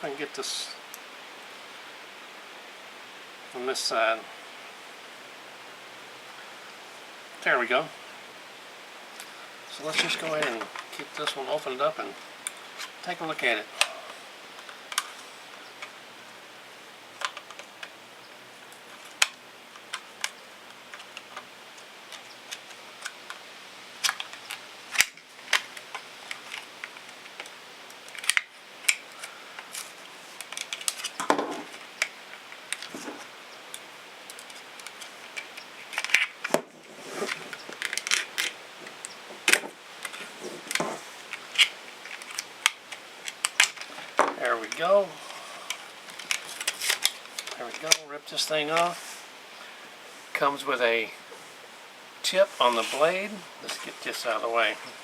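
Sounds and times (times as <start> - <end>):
plastic packaging crinkling: 34.3 - 44.8, 45.7 - 48.0.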